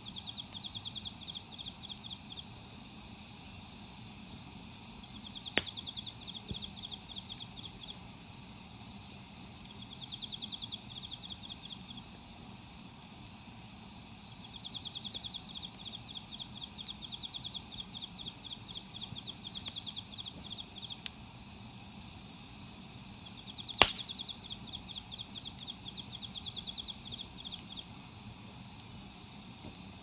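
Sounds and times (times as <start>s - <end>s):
sharp crack: 5.3s - 6.1s, 23.7s - 24.6s.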